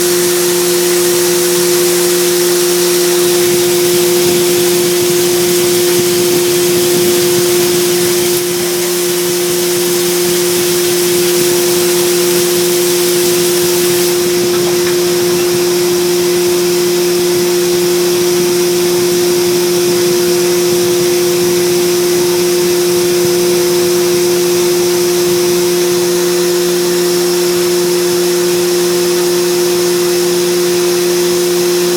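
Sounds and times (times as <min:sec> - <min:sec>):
high hiss: 0:00.0 - 0:31.4
milling machine spindle hum: 0:00.0 - 0:31.9.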